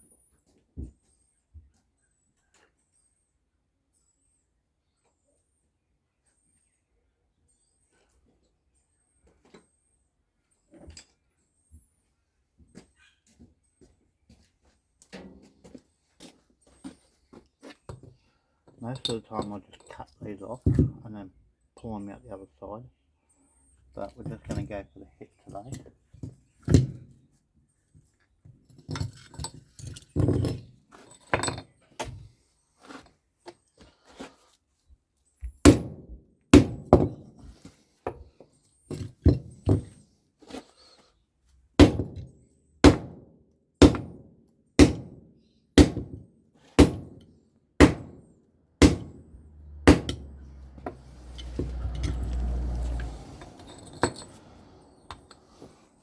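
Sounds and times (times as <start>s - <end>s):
hammer striking metal: 48.8s - 49.2s, 49.8s - 50.3s.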